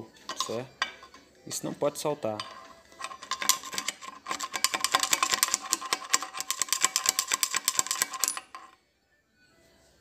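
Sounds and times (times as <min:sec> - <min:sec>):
rapid metallic clicking and rattling: 0:03.0 - 0:08.7.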